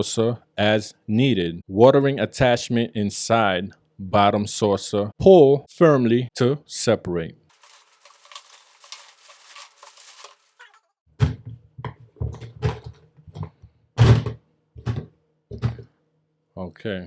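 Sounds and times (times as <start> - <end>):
plastic parts thunking: 7.5 - 10.8
plastic scraping rustle: 7.5 - 10.8.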